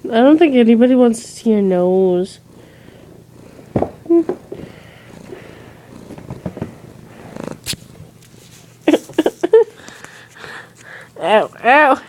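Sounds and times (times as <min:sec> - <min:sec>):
cat purring: 0:00.1 - 0:09.5.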